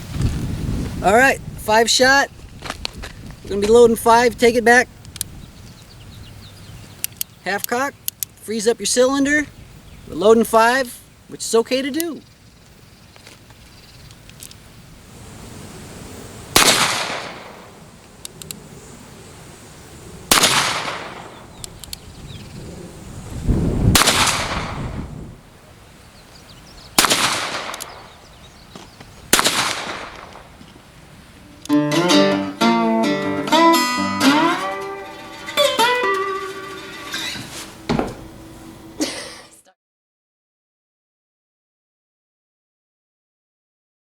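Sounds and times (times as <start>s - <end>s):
revolver shots echoing: 16.6s - 17.8s, 20.3s - 21.6s, 24.0s - 24.8s, 27.0s - 28.2s, 29.4s - 30.6s
acoustic guitar music: 31.4s - 39.0s.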